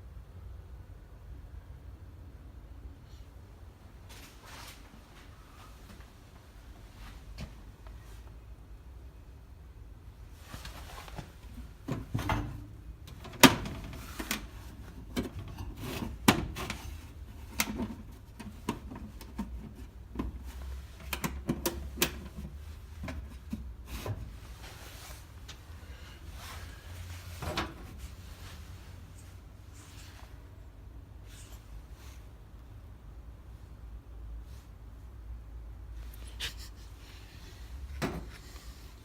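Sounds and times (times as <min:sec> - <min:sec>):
knocks clicks and clunks: 0:11.6 - 0:24.3.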